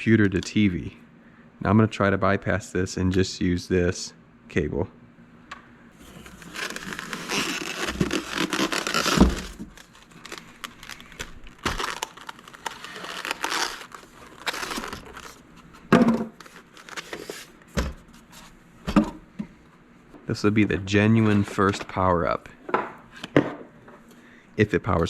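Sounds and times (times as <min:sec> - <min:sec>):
packaging crinkling: 0:06.0 - 0:15.4, 0:16.3 - 0:17.6.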